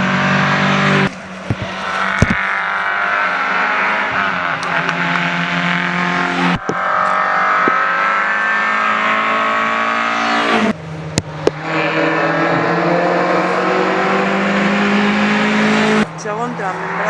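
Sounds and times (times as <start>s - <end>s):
car passing by: 0.0s - 17.0s
rally car engines revving: 0.0s - 17.0s
sharp cracks: 0.9s - 8.6s.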